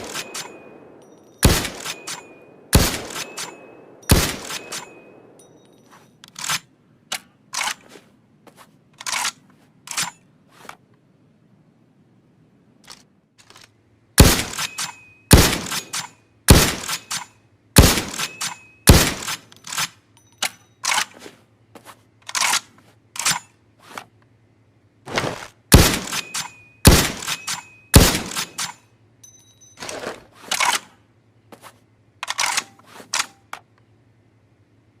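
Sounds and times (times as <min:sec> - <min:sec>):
rifle bolt metallic clacks: 0:00.0 - 0:07.9, 0:08.9 - 0:10.3, 0:14.4 - 0:21.2, 0:22.2 - 0:23.6, 0:25.8 - 0:31.0, 0:32.2 - 0:33.8.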